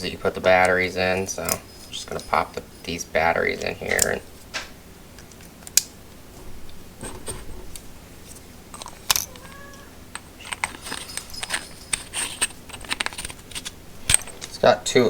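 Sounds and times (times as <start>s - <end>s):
batteries clicking against plastic: 8.7s - 14.6s.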